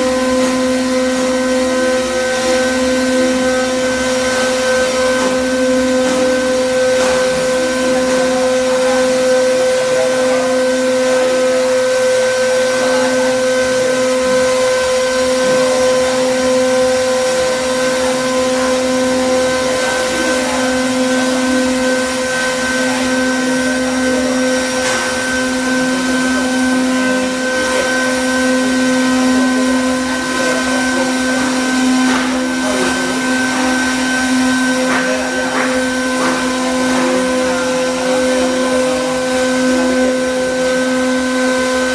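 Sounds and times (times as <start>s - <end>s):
router spindle whine: 0.0s - 41.9s.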